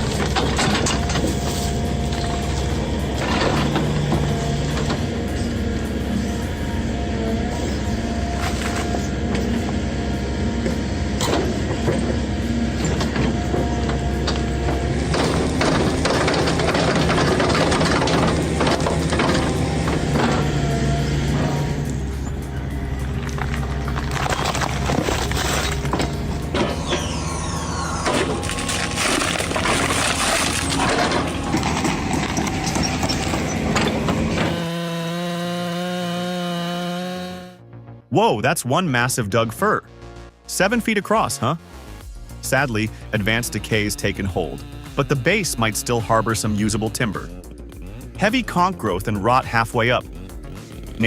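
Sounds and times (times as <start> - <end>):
knocks and clatter: 0.0 - 5.1, 10.6 - 22.4, 28.0 - 34.8
heavy machine engine running: 0.0 - 37.6, 42.0 - 51.0
wood cracking and crunching: 12.9 - 20.6, 23.0 - 36.9.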